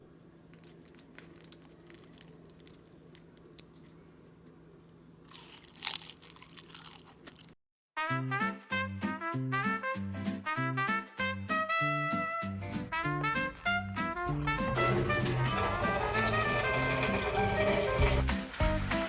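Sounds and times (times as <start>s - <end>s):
crunching and chewing: 0.4s - 7.6s
swing music with brass: 8.0s - 19.0s
low hum: 12.6s - 18.2s.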